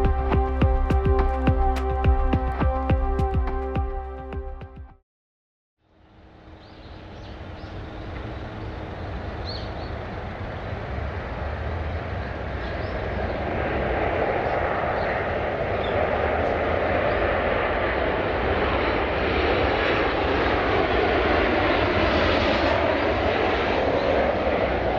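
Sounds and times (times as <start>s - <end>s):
jet airliner engine: 6.0s - 24.9s.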